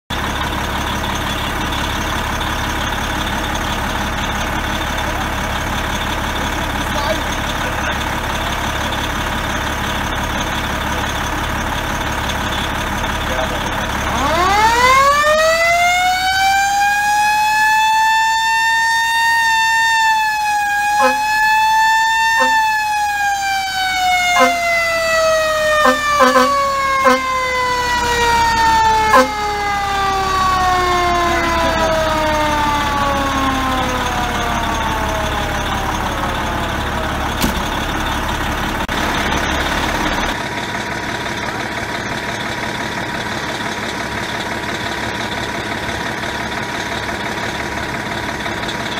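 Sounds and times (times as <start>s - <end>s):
fire truck siren wailing: 0.1s - 48.9s
truck engine idling: 0.1s - 48.9s
air horn blasts: 20.8s - 21.6s, 22.2s - 22.9s, 24.2s - 25.0s, 25.6s - 27.5s, 29.0s - 29.6s.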